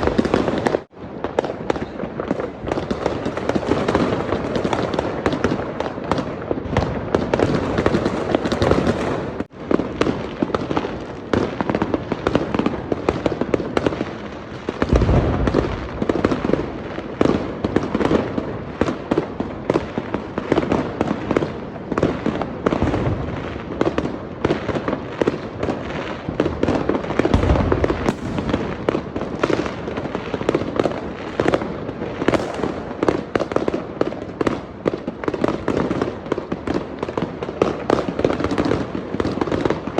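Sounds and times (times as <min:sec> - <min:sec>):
deep firework booms: 0:00.0 - 0:14.0, 0:14.7 - 0:39.7
fireworks bangs and crackles: 0:00.0 - 0:39.9.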